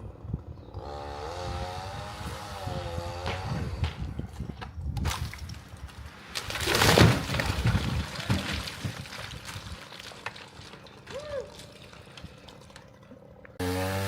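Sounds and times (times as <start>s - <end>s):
tree crashing down: 4.9s - 12.9s
cracks of breaking wood: 4.9s - 13.0s.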